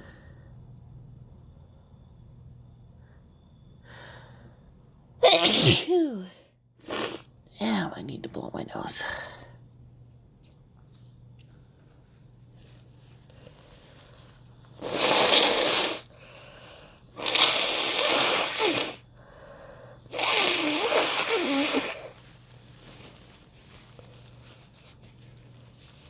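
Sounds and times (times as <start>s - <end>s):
person blowing nose: 5.2s - 6.0s, 6.8s - 7.2s, 14.8s - 16.1s, 17.2s - 19.1s, 20.1s - 22.3s
quick breaths: 13.3s - 17.3s, 18.0s - 22.2s.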